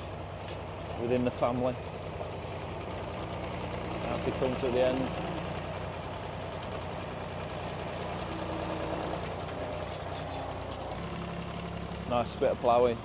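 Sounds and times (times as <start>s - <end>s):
tractor engine running: 0.0s - 13.0s.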